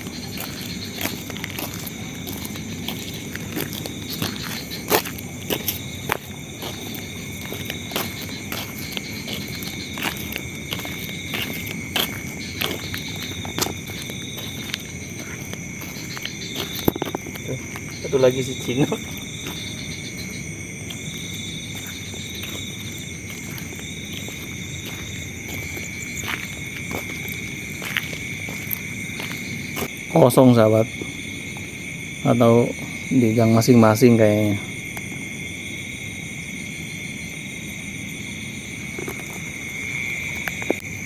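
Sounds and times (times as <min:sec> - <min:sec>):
crickets trilling: 0:00.0 - 0:41.0.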